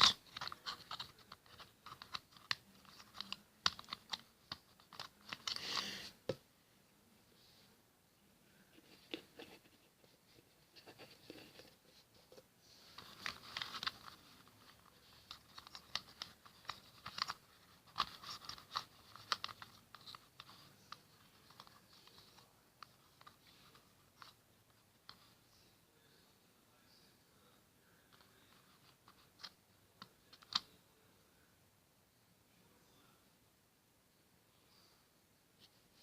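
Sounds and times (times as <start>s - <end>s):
plastic puzzle cube clicking: 0.0s - 6.0s, 13.0s - 23.4s, 29.1s - 30.7s
cotton swab scratching: 0.0s - 6.2s.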